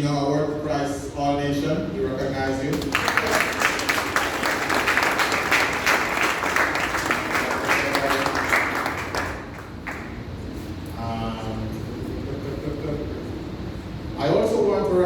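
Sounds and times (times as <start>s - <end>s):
congregation applauding: 2.7s - 10.4s.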